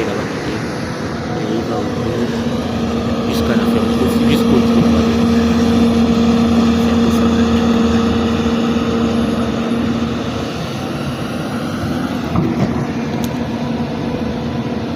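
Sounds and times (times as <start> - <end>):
diesel engine running: 0.0 - 14.9.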